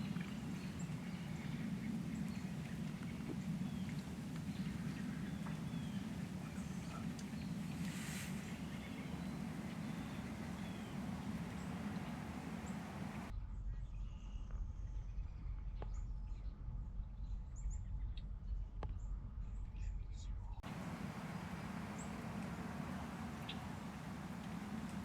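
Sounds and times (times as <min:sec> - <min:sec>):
steady low hum: 0:00.0 - 0:13.3, 0:20.6 - 0:25.0
high bird chirps: 0:04.6 - 0:13.3, 0:20.7 - 0:25.0.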